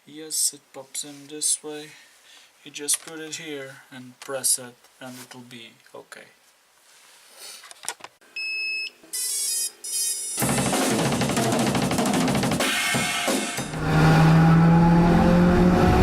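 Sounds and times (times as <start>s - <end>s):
drum kit beat with cymbals: 10.4s - 13.8s
held bass note: 13.7s - 16.0s.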